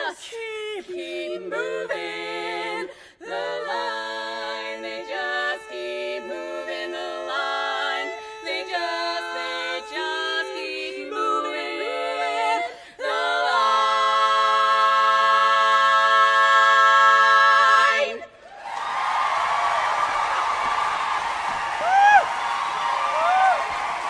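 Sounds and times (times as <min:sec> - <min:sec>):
women singing a cappella harmony: 0:00.0 - 0:18.4.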